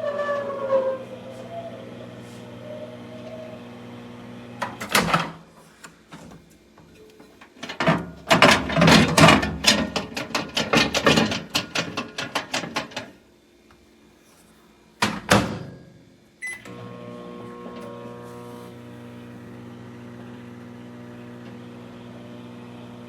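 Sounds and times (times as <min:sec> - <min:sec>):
rapid clicks knocks and rustles: 0:07.6 - 0:13.1.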